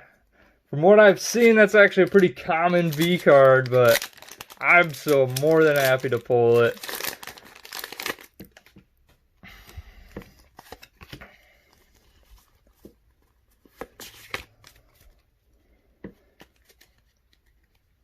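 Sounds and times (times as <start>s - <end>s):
foil wrapper crinkling: 2.0s - 8.7s.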